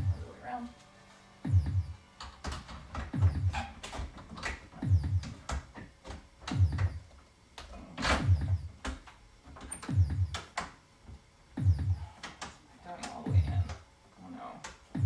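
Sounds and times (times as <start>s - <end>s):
deep double thumps: 1.4s - 2.0s, 3.0s - 3.6s, 4.6s - 5.4s, 6.5s - 7.1s, 8.1s - 8.8s, 9.8s - 10.4s, 11.6s - 12.0s, 13.2s - 13.8s.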